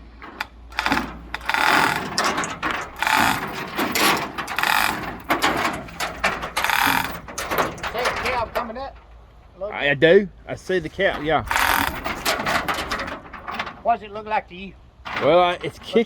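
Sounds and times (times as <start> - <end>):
hand ratchet clicking: 0.0 - 7.7, 11.5 - 12.5.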